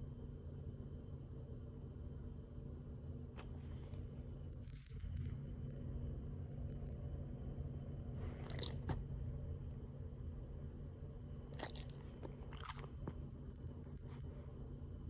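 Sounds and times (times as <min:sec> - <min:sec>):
dog snoring wetly: 0:08.3 - 0:09.0.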